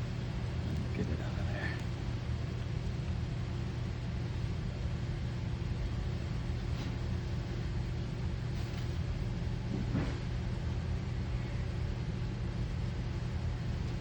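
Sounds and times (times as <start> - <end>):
low mechanical hum: 0.0 - 14.0.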